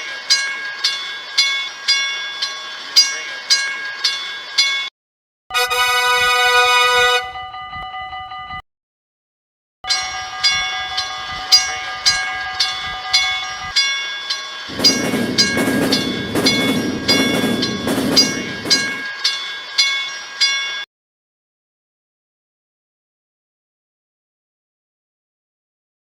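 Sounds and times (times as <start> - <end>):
railroad crossing bell ringing: 0.0 - 4.9, 5.5 - 8.6, 9.8 - 20.9
train passing: 14.6 - 19.5.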